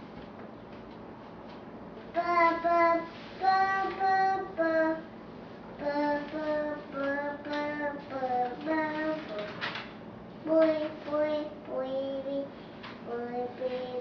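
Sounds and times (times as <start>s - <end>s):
child singing: 2.1s - 5.1s, 5.8s - 9.6s, 10.4s - 14.0s.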